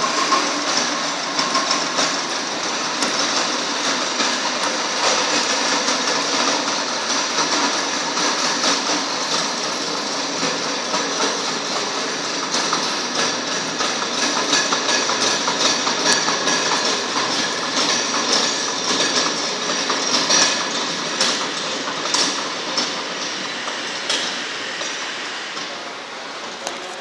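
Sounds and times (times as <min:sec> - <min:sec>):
wood chipper clattering: 0:00.0 - 0:23.4.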